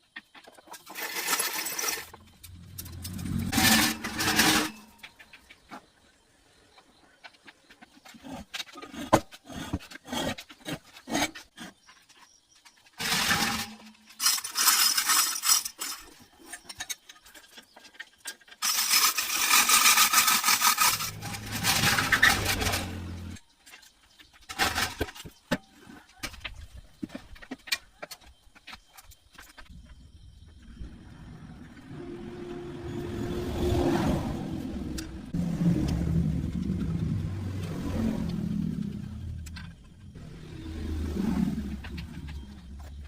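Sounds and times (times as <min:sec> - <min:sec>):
harsh abrasive scraping: 0:00.9 - 0:05.3, 0:18.6 - 0:23.4, 0:31.2 - 0:43.0
low motor hum: 0:02.1 - 0:04.2, 0:20.9 - 0:23.4, 0:30.6 - 0:43.0.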